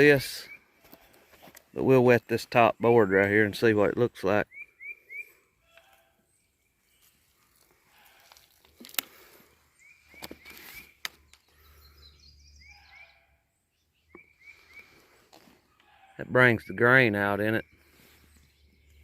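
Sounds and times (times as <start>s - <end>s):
small bird chirping: 4.4s - 8.7s, 9.7s - 19.0s.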